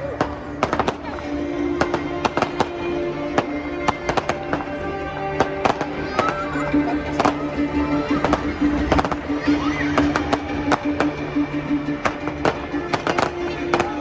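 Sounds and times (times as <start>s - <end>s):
music playing: 0.0s - 14.0s
fireworks banging: 0.1s - 14.0s.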